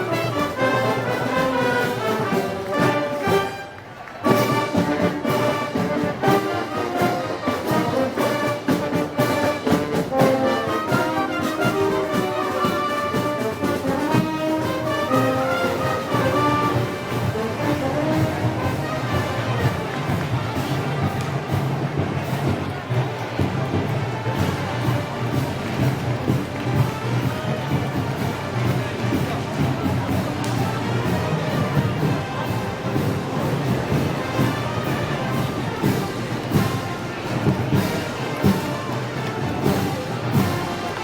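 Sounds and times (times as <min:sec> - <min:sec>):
brass band playing: 0:00.0 - 0:41.0.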